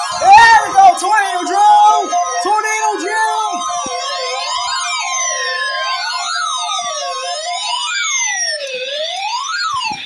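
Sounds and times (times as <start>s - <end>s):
steady high tone: 0.0s - 6.0s
electronic warning siren wailing: 0.0s - 10.0s.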